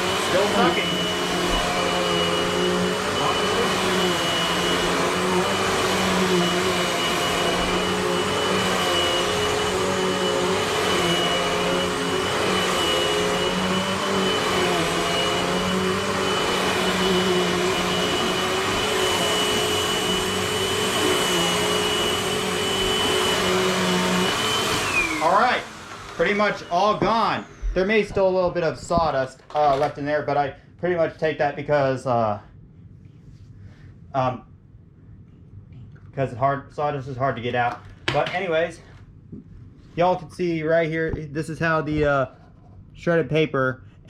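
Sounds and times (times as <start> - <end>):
upright vacuum cleaner running: 0.0 - 30.1.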